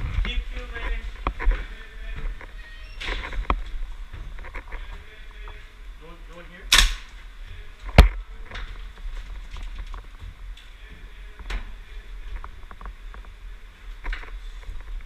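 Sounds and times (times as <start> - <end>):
footsteps: 0.0 - 5.8, 7.1 - 15.0
airsoft gun shots: 6.7 - 7.1.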